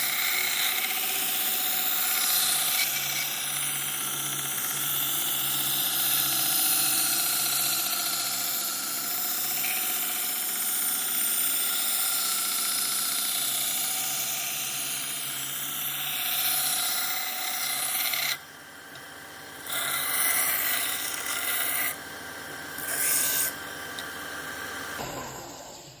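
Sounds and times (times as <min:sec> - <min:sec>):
bandsaw cutting wood: 0:00.0 - 0:03.6, 0:19.6 - 0:22.0, 0:22.7 - 0:23.6.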